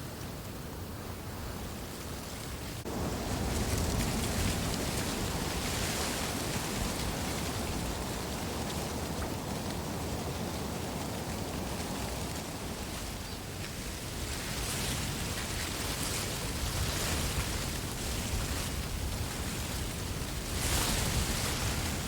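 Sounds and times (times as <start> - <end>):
wind rustling through reeds: 0.0 - 22.0.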